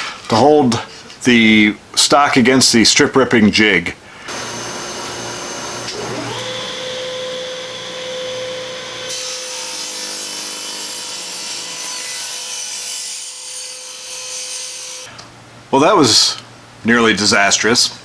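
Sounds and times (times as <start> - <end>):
table saw running: 4.3 - 15.1.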